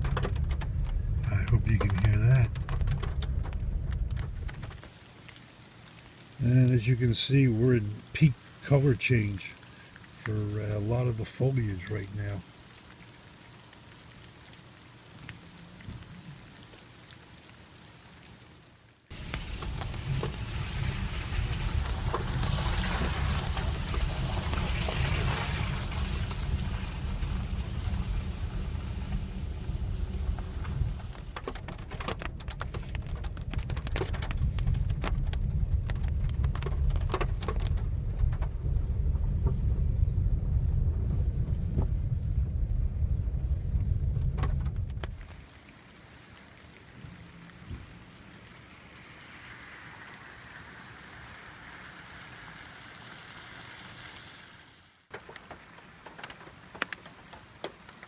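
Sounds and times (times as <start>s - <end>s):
car rumble while moving: 0.0s - 4.9s, 19.1s - 45.2s
rain drops ticking on car roof: 0.0s - 58.0s.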